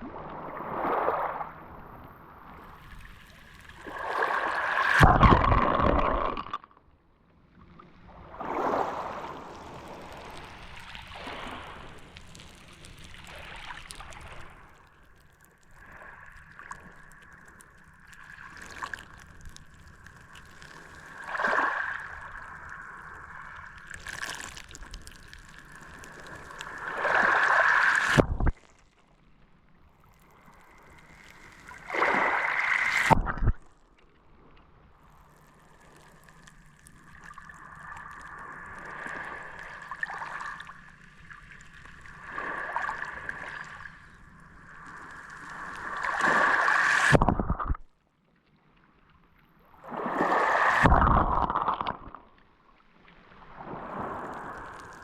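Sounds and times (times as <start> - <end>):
sea waves washing onto beach: 8.4 - 14.8, 15.7 - 28.3, 30.4 - 33.2, 42.1 - 47.6, 49.8 - 51.7, 53.6 - 55.0.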